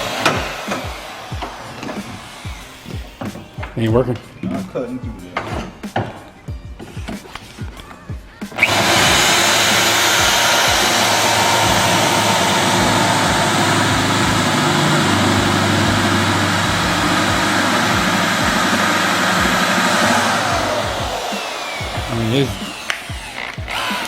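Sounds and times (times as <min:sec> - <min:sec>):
loud whirring machine: 0:00.0 - 0:02.8, 0:08.6 - 0:24.0.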